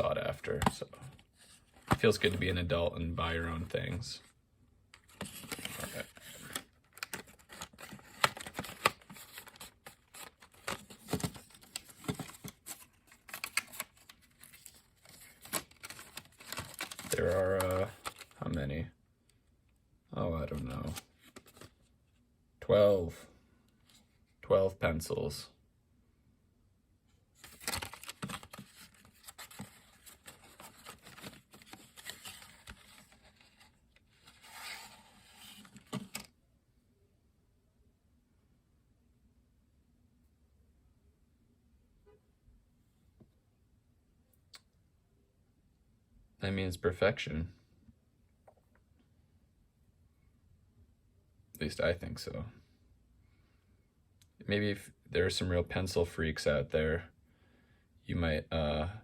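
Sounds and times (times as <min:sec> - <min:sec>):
pencils scraping and rustling in box: 0:05.0 - 0:18.4, 0:27.4 - 0:36.3.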